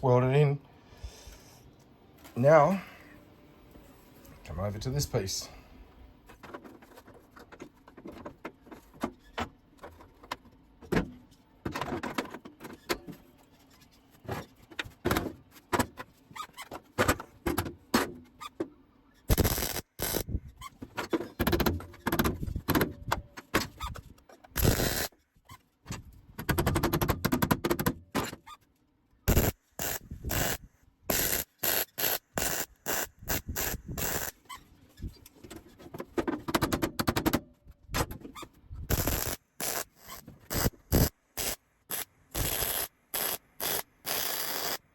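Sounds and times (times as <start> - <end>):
harsh metalworking bursts on sheet metal: 19.3 - 20.2, 29.3 - 34.3, 38.9 - 44.9.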